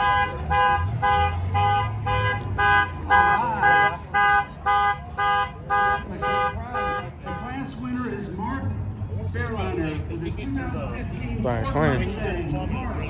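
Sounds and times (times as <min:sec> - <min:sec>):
car alarm horn blasts: 0:00.0 - 0:07.7.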